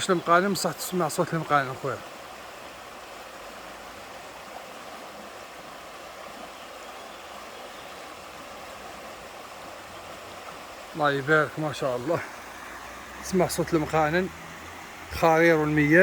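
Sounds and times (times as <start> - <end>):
stream of water flowing: 0.0 - 16.0.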